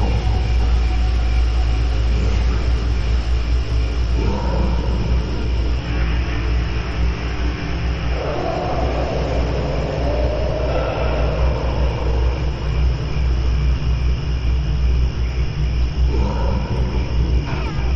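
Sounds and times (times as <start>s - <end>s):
wavering ghostly moan: 0.0s - 3.4s, 4.0s - 6.1s, 7.9s - 13.7s
deep rumbling drone: 0.0s - 17.9s.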